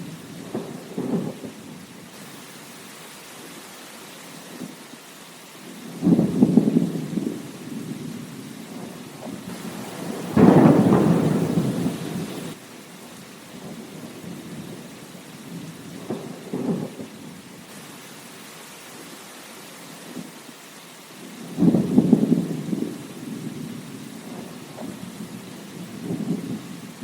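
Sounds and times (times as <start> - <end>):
thunder rumbling: 0.0 - 1.9, 5.8 - 12.6, 13.6 - 17.4, 21.3 - 27.0
steady rain: 0.0 - 27.0.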